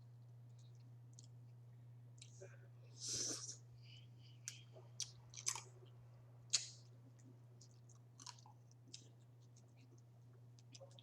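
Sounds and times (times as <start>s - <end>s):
steady low hum: 0.0s - 11.0s
chewing: 4.4s - 5.8s, 6.5s - 11.0s.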